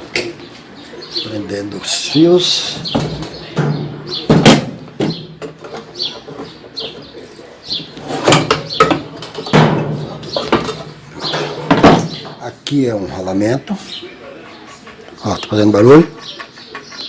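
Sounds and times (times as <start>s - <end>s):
loud knocks: 2.9s - 5.5s, 8.3s - 12.4s
metal and plastic parts clunking: 2.9s - 7.1s, 7.9s - 12.4s.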